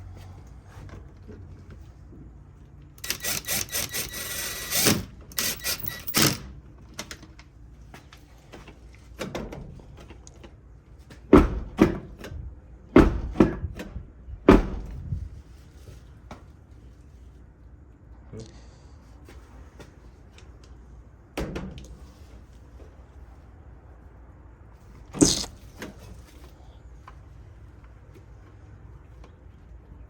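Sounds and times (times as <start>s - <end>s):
truck door knocks and thuds: 11.3s - 12.3s, 12.9s - 15.1s.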